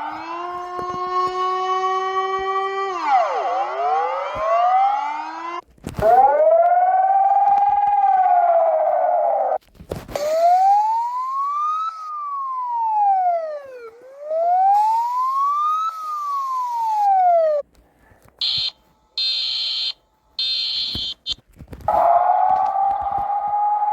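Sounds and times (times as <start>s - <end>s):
emergency siren wailing: 0.0s - 9.6s, 10.2s - 17.6s, 21.9s - 23.9s
high-pitched alarm tones: 18.4s - 23.9s.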